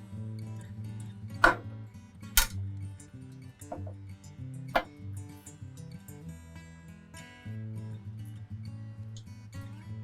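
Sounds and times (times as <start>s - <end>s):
acoustic guitar music: 0.0s - 10.0s
metal parts knocking: 1.4s - 1.7s, 3.7s - 4.0s.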